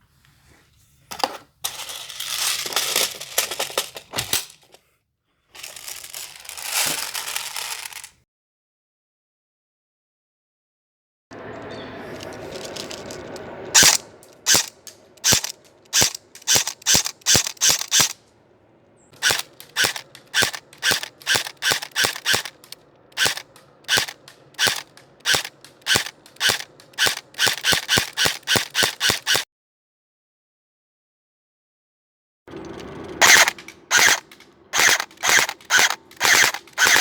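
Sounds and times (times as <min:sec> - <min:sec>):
rustling hiss: 0:05.6 - 0:08.1, 0:11.4 - 0:18.4
airsoft gun shots: 0:13.8 - 0:18.2, 0:33.2 - 0:37.0.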